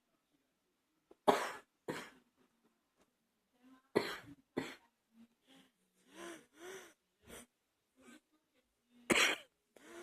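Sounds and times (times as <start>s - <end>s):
person coughing: 9.1s - 9.5s.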